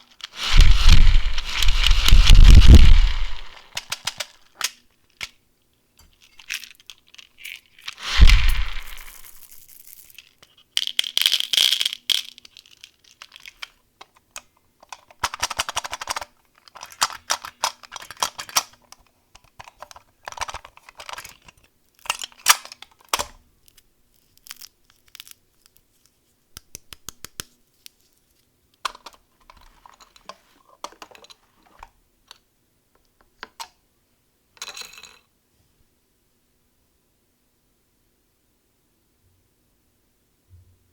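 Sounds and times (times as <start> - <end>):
plastic packaging crinkling: 0.0 - 4.6, 6.2 - 10.6, 20.9 - 26.3
small clicks and taps: 26.5 - 28.1.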